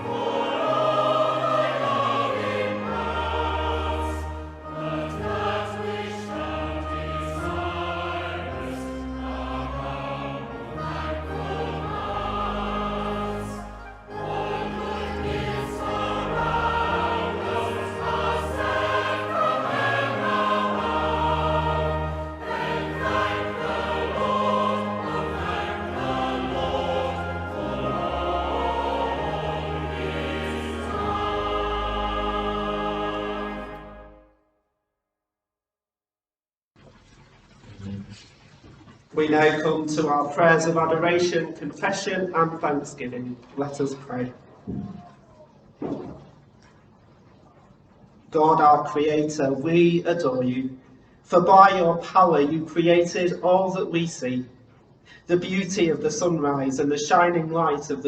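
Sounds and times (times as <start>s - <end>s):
choir singing a hymn: 0.0s - 34.3s
instrumental accompaniment: 0.0s - 34.4s.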